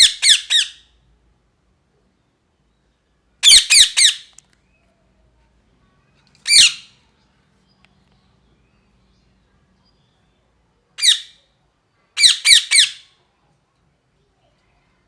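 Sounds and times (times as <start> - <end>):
parrot squawking: 0.0 - 0.9, 3.4 - 4.3, 6.4 - 7.0, 11.0 - 11.4, 12.2 - 13.1.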